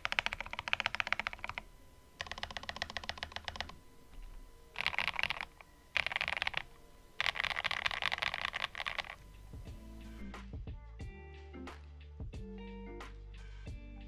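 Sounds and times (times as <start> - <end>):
mechanical keyboard typing: 0.0 - 9.2.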